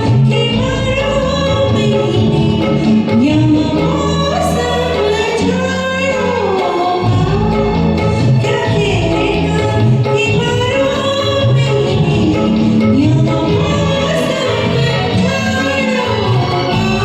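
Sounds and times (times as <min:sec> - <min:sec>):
karaoke backing track: 0:00.0 - 0:17.0
person singing: 0:00.0 - 0:17.0.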